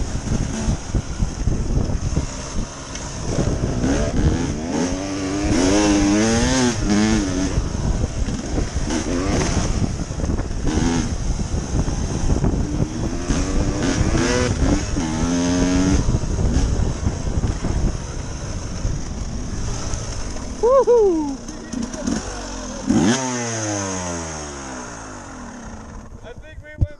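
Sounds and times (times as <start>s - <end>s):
dirt bike two-stroke engine revving: 0.0s - 26.3s.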